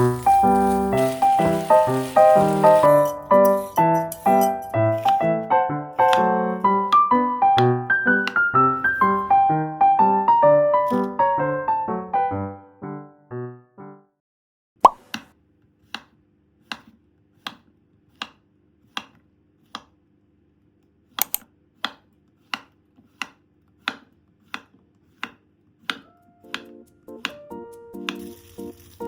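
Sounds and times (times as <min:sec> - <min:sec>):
knife slicing on cutting board: 0:00.0 - 0:05.4, 0:06.0 - 0:06.6, 0:28.0 - 0:29.0.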